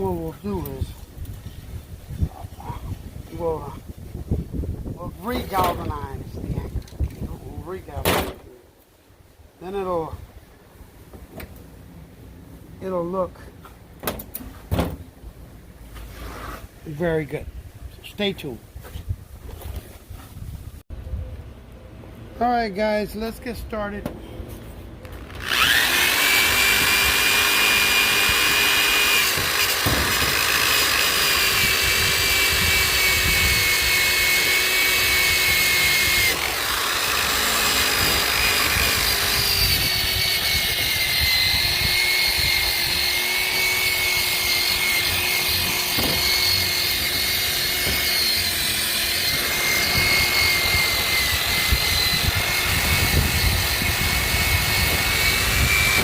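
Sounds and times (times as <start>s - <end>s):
electric drill motor whine: 25.2s - 56.0s.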